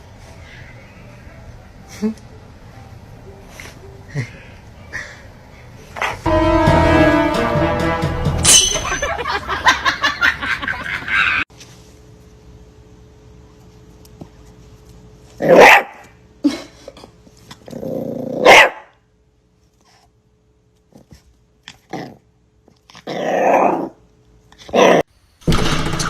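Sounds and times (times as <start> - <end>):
dog growling and barking: 15.4 - 15.9, 17.6 - 18.9, 21.7 - 22.3, 22.9 - 24.0, 24.6 - 25.1.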